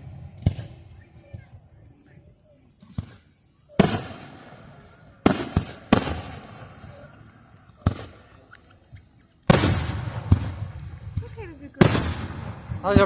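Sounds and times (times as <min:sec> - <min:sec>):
fireworks bursting with echoing rumble: 0:00.0 - 0:01.5, 0:02.8 - 0:06.9, 0:07.7 - 0:08.3, 0:09.5 - 0:13.0.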